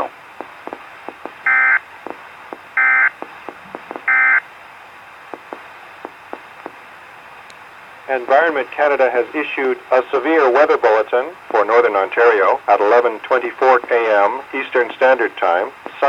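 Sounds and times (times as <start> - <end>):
static clicks: 0.0 - 4.5, 5.2 - 6.8, 11.4 - 16.0
faint radio hiss: 0.0 - 16.0
buzzy digital alert bursts: 1.4 - 1.8, 2.8 - 4.4.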